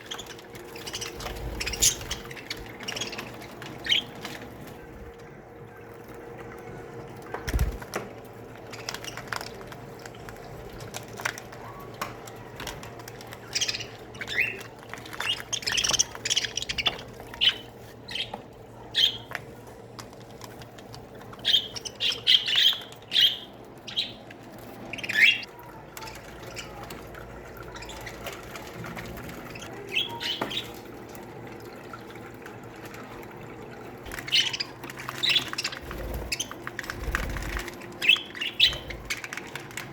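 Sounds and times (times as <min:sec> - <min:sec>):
budgerigars chirping: 0:00.1 - 0:04.1, 0:21.4 - 0:24.2, 0:24.9 - 0:25.5, 0:34.2 - 0:36.5, 0:37.4 - 0:39.2.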